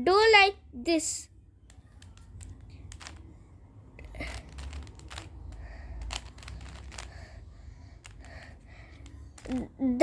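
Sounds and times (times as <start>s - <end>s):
puzzle cube plastic clicks: 1.6s - 3.4s, 4.0s - 9.7s.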